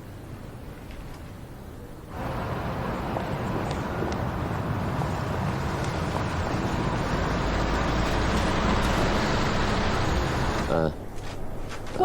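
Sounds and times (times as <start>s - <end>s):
traffic rumble: 0.0s - 12.0s.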